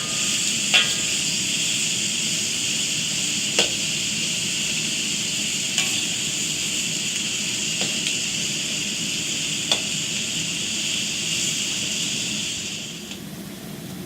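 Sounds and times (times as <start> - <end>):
food sizzling in a wok: 0.0 - 13.8.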